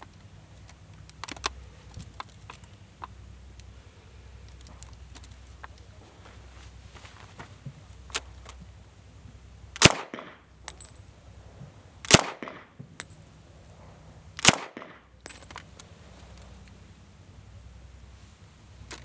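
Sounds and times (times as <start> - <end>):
gunshots with echo: 9.8 - 10.4, 12.1 - 12.7, 14.4 - 15.0.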